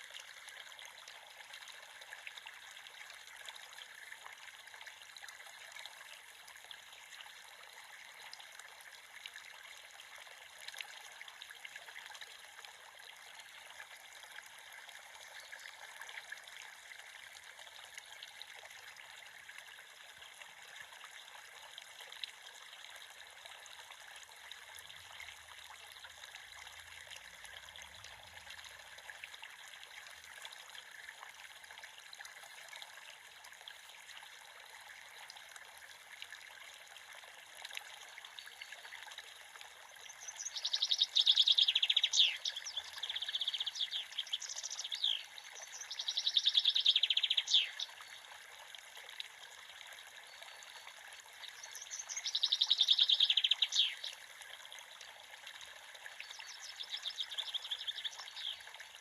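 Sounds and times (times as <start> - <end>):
creek water running: 0.0 - 59.0
songbird trilling: 40.3 - 47.9, 51.7 - 54.1.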